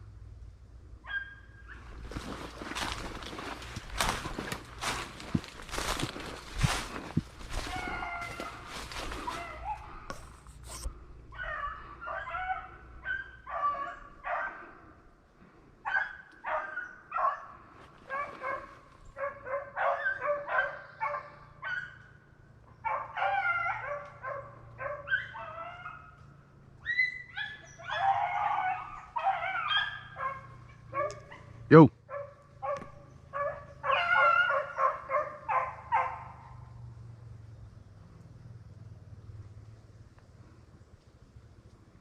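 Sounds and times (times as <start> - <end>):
hounds barking: 1.0 - 15.1, 15.8 - 36.9.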